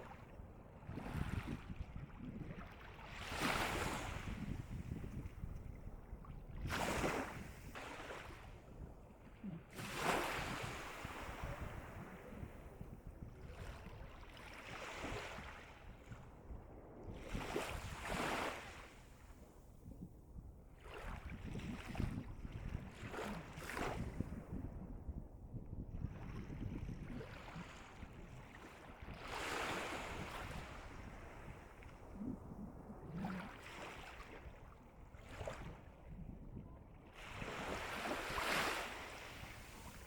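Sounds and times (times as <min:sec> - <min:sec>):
sea waves breaking on shore: 0:02.6 - 0:12.3, 0:17.2 - 0:19.4, 0:27.3 - 0:36.0, 0:37.2 - 0:40.0.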